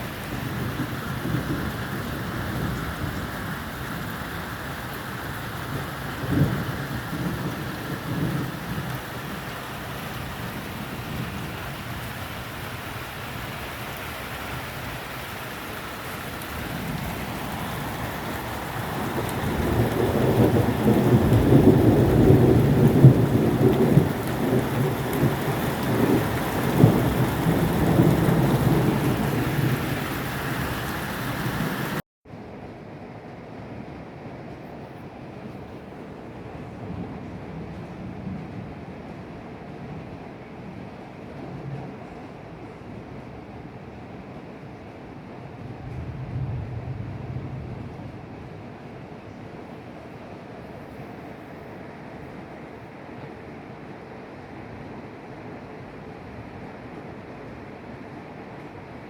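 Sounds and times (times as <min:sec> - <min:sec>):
rolling rumble of thunder: 0:00.0 - 0:32.0, 0:45.6 - 0:49.0
steady rain: 0:00.0 - 0:59.0
thunderclap: 0:05.8 - 0:09.3, 0:16.1 - 0:32.0, 0:45.8 - 0:48.3.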